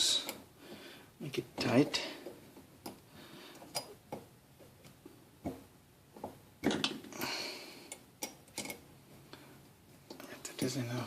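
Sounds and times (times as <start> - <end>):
faucet parts clicking and knocking: 3.6 - 4.2, 8.2 - 8.8.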